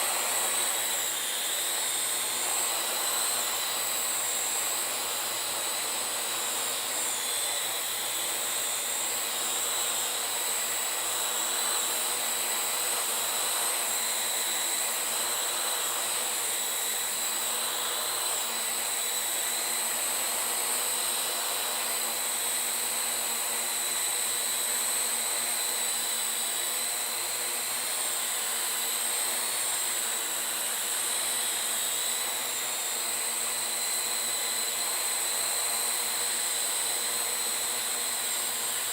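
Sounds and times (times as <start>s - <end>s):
drone propellers whirring: 0.0s - 19.4s.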